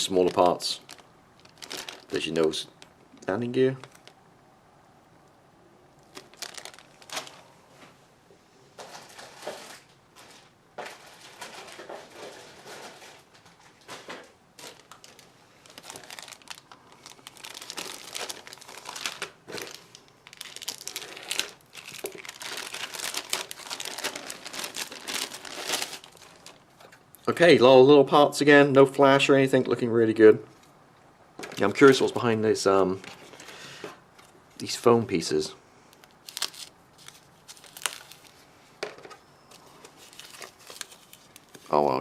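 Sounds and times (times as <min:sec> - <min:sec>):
plastic bags crinkling: 0:00.0 - 0:02.9, 0:03.8 - 0:04.2, 0:06.1 - 0:07.5, 0:08.8 - 0:27.0, 0:36.0 - 0:38.4, 0:39.5 - 0:42.0.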